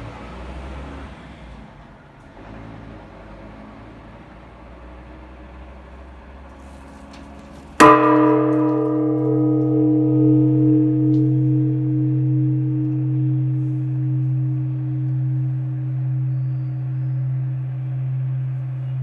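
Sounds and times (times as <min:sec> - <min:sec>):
temple bell ringing: 0:07.8 - 0:19.0.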